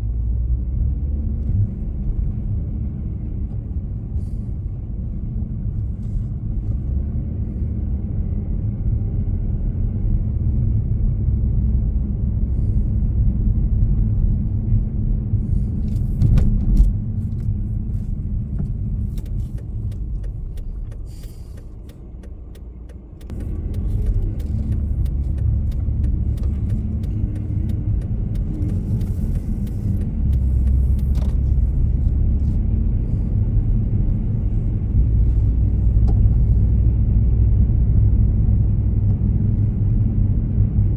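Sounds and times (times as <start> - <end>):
car road and engine rumble: 0.0 - 40.9
faint clicks and rattles: 15.8 - 32.5.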